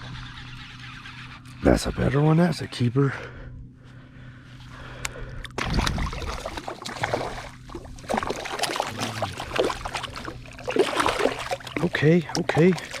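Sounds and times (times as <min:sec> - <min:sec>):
steady low hum: 0:00.0 - 0:13.0
water splashing and sloshing: 0:05.4 - 0:13.0.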